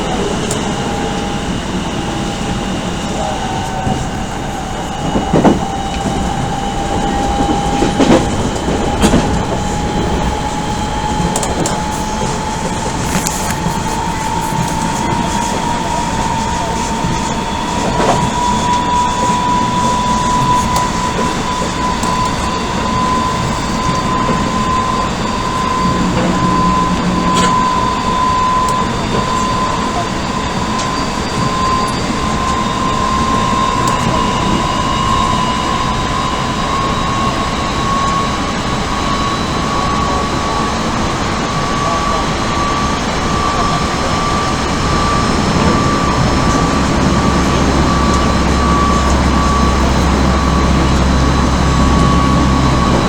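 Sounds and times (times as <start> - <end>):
traction motor whine rising: 0.0 - 53.0
wheels rumbling on rail: 0.0 - 53.0
track knock: 4.9 - 29.4.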